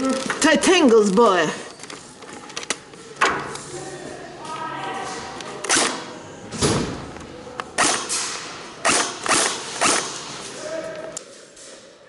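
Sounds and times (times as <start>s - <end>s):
airsoft gunshots: 7.8s - 10.3s.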